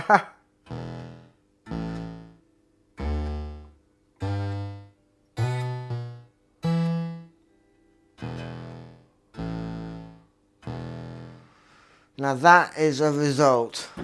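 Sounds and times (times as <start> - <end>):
plucked guitar synthesizer notes: 0.7 - 11.7.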